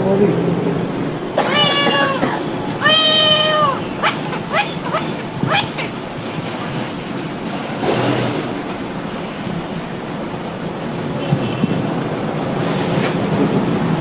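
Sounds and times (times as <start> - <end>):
man imitating cat meows: 1.5 - 3.8.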